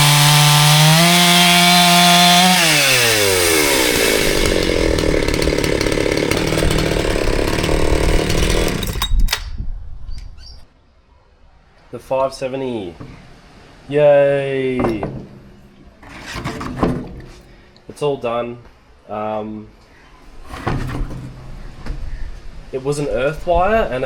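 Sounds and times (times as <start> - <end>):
chainsaw revving and idling: 0.0 - 9.1
knocks: 14.8 - 17.4.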